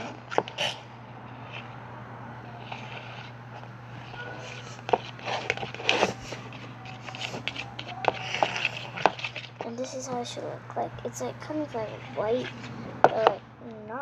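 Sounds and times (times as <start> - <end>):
low electrical hum: 0.0 - 14.0
slime scraping in a bowl: 2.7 - 3.4, 4.1 - 10.5, 11.1 - 13.4.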